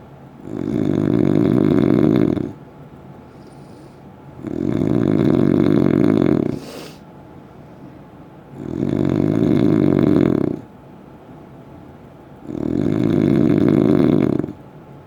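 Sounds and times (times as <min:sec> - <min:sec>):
heavy snoring: 0:00.4 - 0:02.6, 0:04.4 - 0:07.0, 0:08.6 - 0:10.7, 0:12.5 - 0:14.6
hiss of breath: 0:06.5 - 0:07.1.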